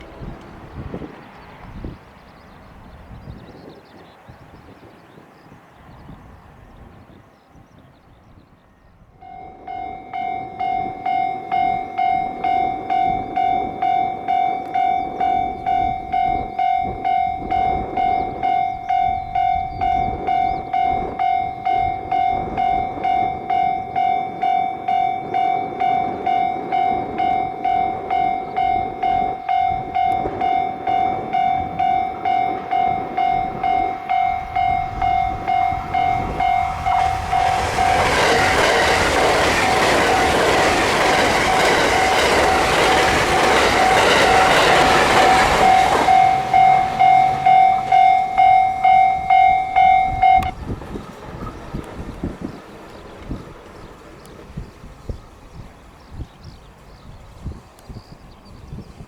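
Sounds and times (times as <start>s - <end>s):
train noise: 0.0s - 59.0s
level crossing alarm dinging: 9.2s - 53.6s.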